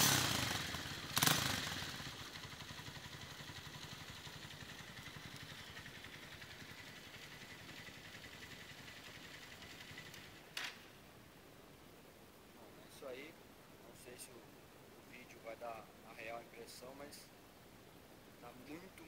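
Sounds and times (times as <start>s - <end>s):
motorcycle engine idling: 0.0s - 10.6s
motorcycle engine revving: 0.0s - 10.6s.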